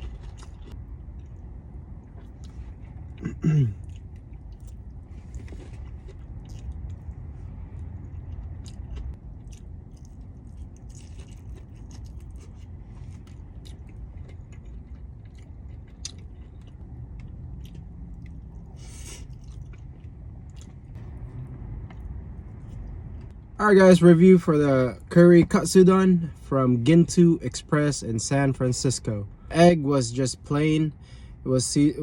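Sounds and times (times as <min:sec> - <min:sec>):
person chewing food: 0:00.0 - 0:21.0, 0:21.8 - 0:23.4.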